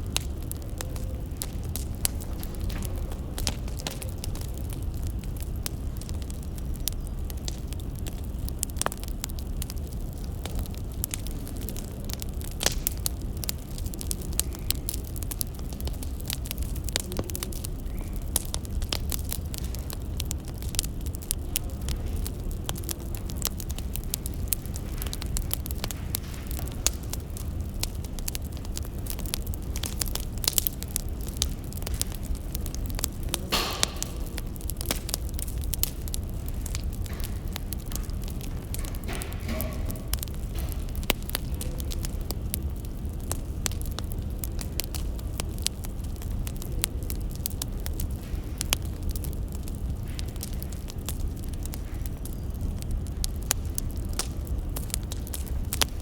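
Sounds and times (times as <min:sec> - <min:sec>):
fire hissing flare: 0:00.0 - 0:56.0
wood fire crackling: 0:00.0 - 0:56.0
low rumble: 0:21.7 - 0:44.3.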